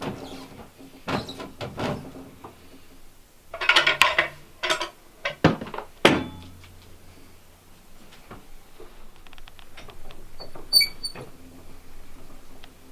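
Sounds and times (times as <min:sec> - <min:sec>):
metallic clanks: 0:00.0 - 0:12.8
hard objects knocking: 0:03.5 - 0:06.9.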